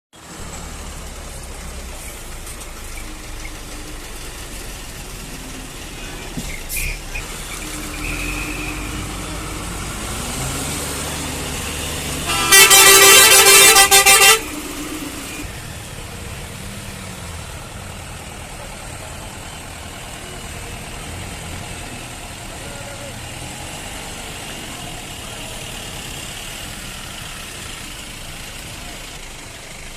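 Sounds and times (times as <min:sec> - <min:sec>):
engines rumbling in traffic: 0:00.1 - 0:29.9
vehicle horn blast: 0:12.2 - 0:14.7.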